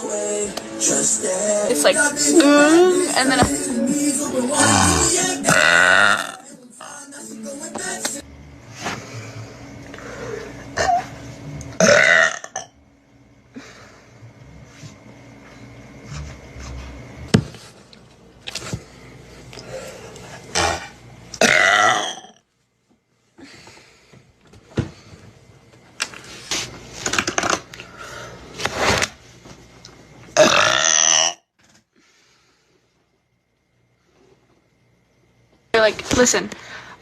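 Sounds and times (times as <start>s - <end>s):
person burping: 4.5s - 6.5s, 10.7s - 11.1s, 11.8s - 12.8s, 20.5s - 22.4s, 30.4s - 31.5s.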